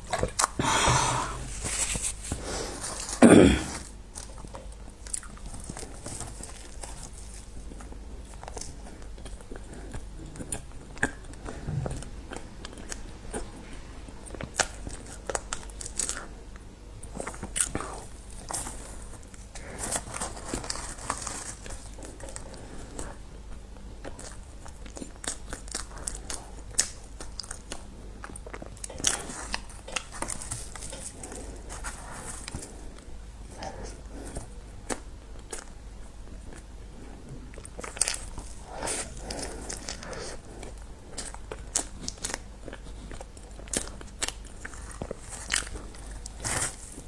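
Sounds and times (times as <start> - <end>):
person chewing crunchy food: 0.0 - 47.0.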